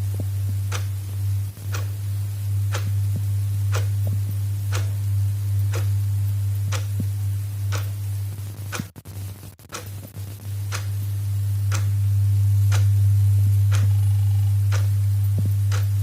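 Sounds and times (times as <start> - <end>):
loud steady low hum: 0.0 - 16.0
clock ticking: 0.7 - 1.0, 1.7 - 2.0, 2.7 - 5.0, 5.7 - 6.0, 6.7 - 7.1, 7.7 - 8.0, 8.7 - 9.0, 9.6 - 10.0, 10.7 - 10.9, 11.7 - 12.0, 12.7 - 12.9, 13.7 - 14.0, 14.7 - 16.0.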